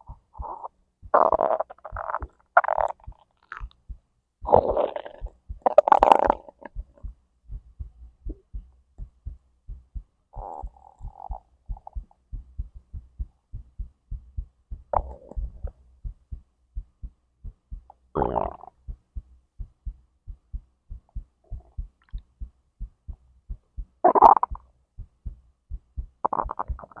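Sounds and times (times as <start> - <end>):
stomach gurgling and rumbling: 0.0 - 8.6, 10.3 - 13.0, 14.8 - 15.8, 18.2 - 18.8, 21.1 - 22.2, 24.0 - 24.7, 26.2 - 27.0
heartbeat thumps: 0.0 - 27.0.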